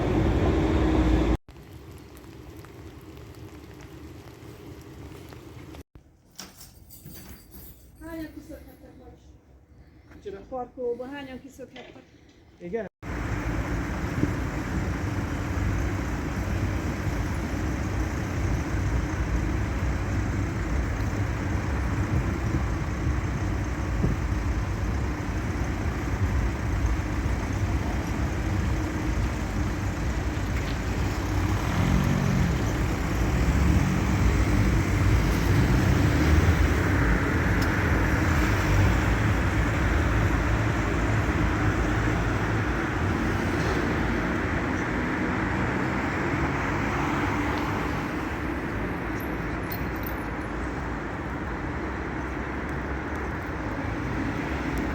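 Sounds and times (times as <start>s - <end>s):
low vehicle rumble: 13.0s - 49.4s.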